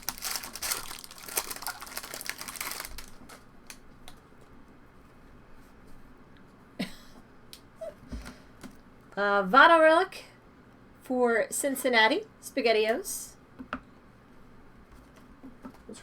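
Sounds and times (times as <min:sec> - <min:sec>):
foil wrapper crinkling: 0:00.0 - 0:03.8.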